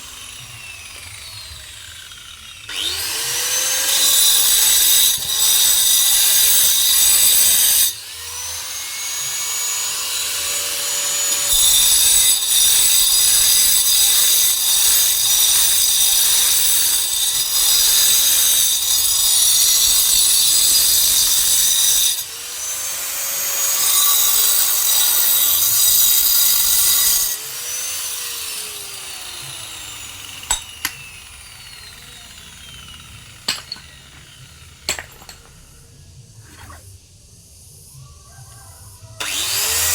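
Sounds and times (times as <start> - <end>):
angle grinder cutting stone: 0.0 - 35.8, 39.2 - 39.9.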